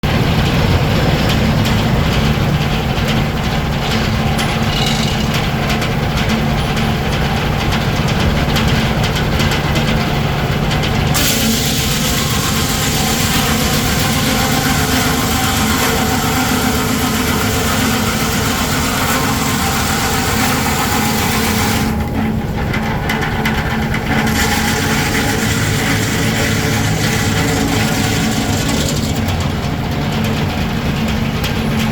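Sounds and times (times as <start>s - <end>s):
sawmill low mechanical hum: 0.0s - 31.9s
bright high-pitched noise: 4.3s - 5.6s.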